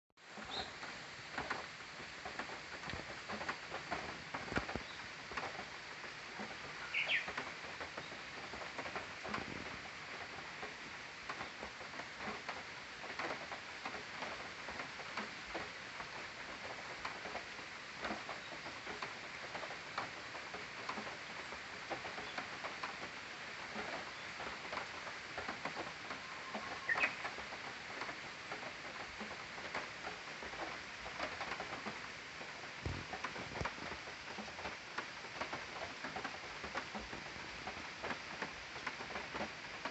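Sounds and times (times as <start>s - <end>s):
bush warbler singing: 0.4s - 0.8s, 6.8s - 8.3s, 26.3s - 27.3s
light clicks and ticks: 1.4s - 5.7s.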